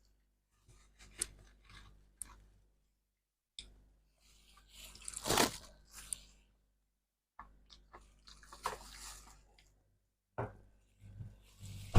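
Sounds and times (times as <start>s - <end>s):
crunching and chewing ice: 4.9s - 5.8s.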